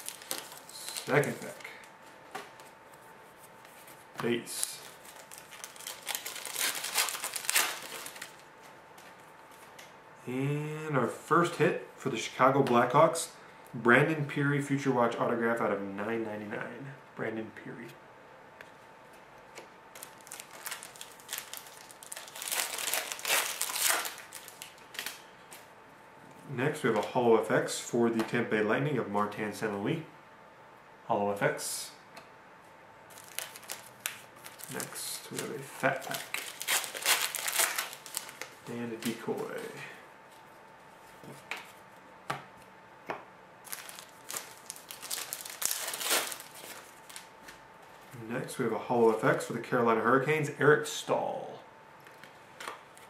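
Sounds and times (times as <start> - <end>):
wrapper tearing and crinkling: 0.0 - 1.7, 4.5 - 8.4, 19.9 - 25.2, 33.1 - 39.7, 43.6 - 47.3.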